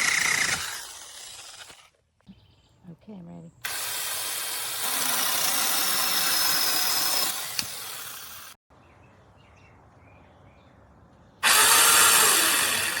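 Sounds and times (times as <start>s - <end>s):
electric chainsaw running: 0.0s - 1.9s, 3.6s - 8.6s, 11.4s - 13.0s.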